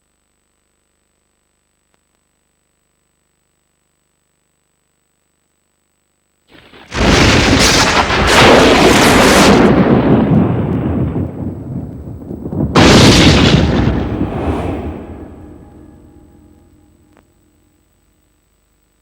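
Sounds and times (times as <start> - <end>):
loud rumbling booms: 7.0 - 17.1.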